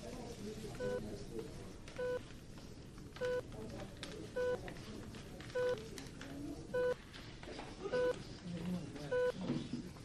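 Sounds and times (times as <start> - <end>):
patient monitor beeping: 0.8 - 1.1, 2.0 - 2.3, 3.2 - 3.5, 5.6 - 5.8, 6.7 - 7.0, 9.1 - 9.4.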